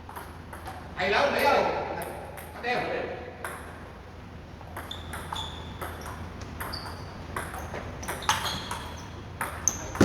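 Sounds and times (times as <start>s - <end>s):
ping pong ball hitting paddles: 3.4s - 3.8s, 4.7s - 10.0s.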